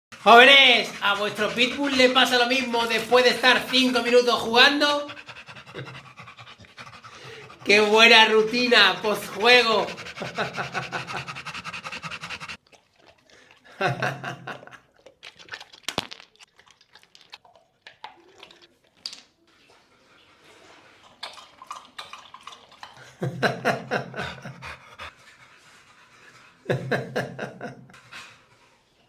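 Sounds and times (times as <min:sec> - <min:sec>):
dog panting: 0:00.1 - 0:13.7, 0:19.7 - 0:29.0.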